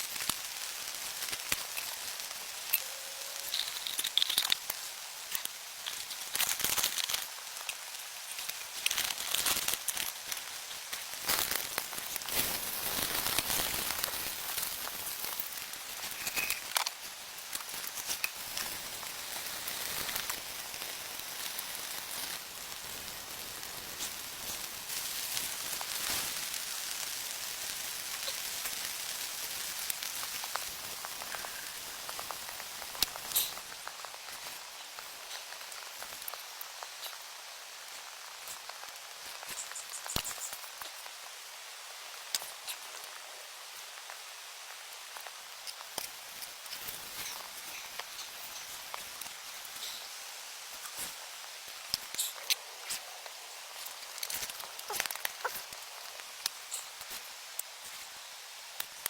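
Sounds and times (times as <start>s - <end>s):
rain falling: 0.0s - 39.7s.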